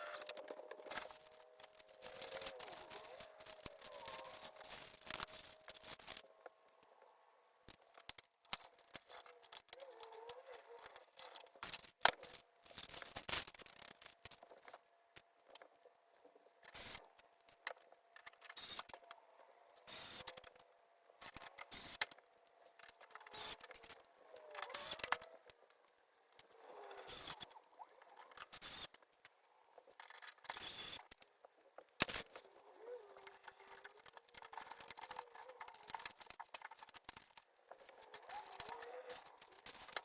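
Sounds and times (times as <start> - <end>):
hands handling computer hardware: 0.0 - 6.6.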